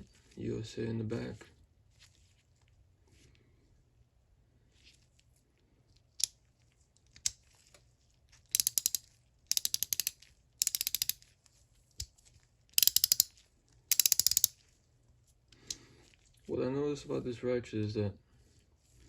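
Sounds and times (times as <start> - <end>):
ratchet clicking: 8.5 - 11.2, 12.8 - 13.3, 13.9 - 14.5.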